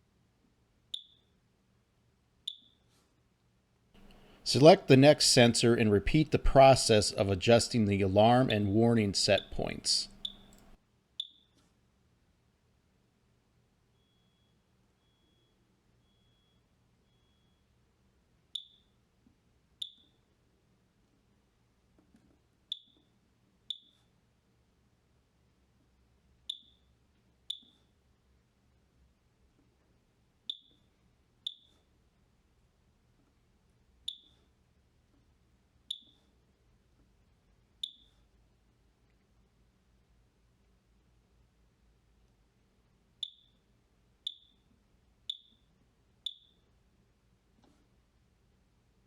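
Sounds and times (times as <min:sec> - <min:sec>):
high-pitched electronic beeps: 0:44.3 - 0:44.6, 0:45.3 - 0:45.6, 0:46.3 - 0:46.6.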